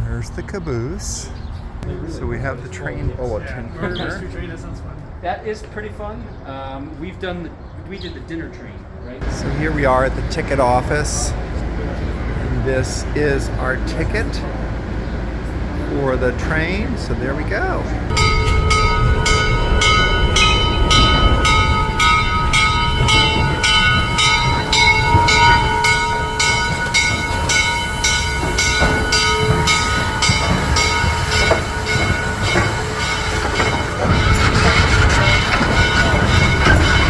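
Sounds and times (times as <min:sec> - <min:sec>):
locomotive bell ringing: 0:09.2 - 0:37.0
low rumble: 0:09.2 - 0:37.0.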